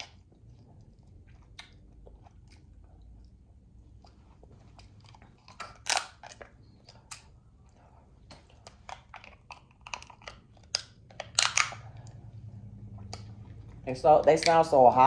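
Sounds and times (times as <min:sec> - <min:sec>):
chewing: 0:00.0 - 0:14.7
crab shell cracking: 0:05.4 - 0:07.3, 0:08.3 - 0:12.0.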